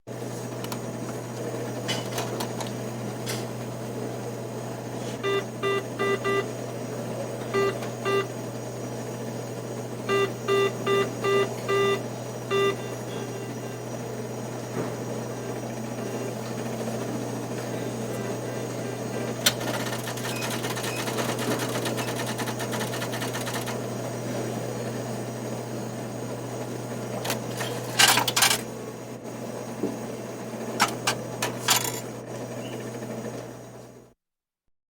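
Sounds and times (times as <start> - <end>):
steady machine hum: 0.1 - 34.2
keypad beeps: 5.2 - 6.5, 7.5 - 8.3, 10.1 - 13.5, 19.5 - 23.8.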